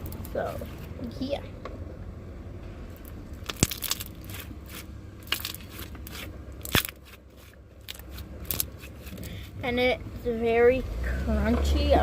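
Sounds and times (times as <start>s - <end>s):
crunchy slime crackling and popping: 3.0s - 9.3s.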